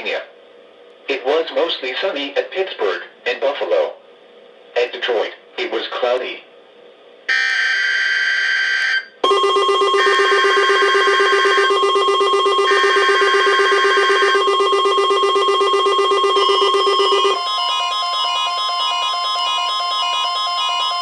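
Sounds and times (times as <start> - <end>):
pulsing alarm: 7.3 - 21.0
steady warning alarm tone: 7.3 - 21.0
buzzy digital data bursts: 9.3 - 17.4.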